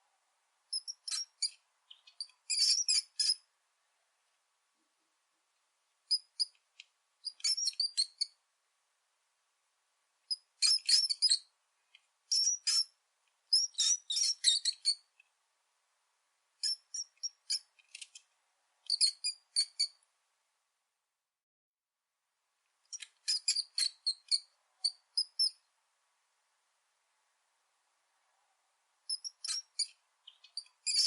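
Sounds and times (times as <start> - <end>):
rat squeaking: 0.7 - 3.5, 6.1 - 6.6, 7.2 - 8.4, 10.3 - 11.5, 12.3 - 15.1, 16.6 - 18.2, 18.8 - 20.0, 22.9 - 25.6, 29.1 - 31.0.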